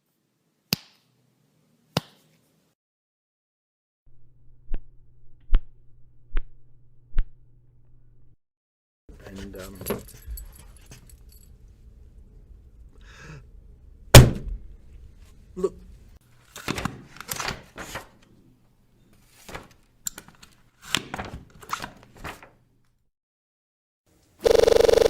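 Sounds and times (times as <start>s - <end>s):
punches hitting body: 14.2s - 14.6s.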